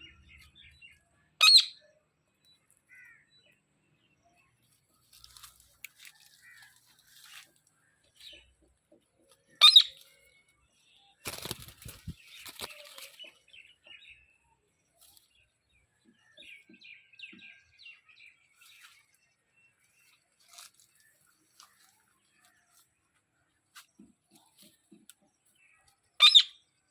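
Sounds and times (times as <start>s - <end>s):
bird chirping and chattering: 1.4s - 1.8s, 9.5s - 10.2s, 11.2s - 14.3s, 25.7s - 26.7s
wings flapping: 11.2s - 13.2s.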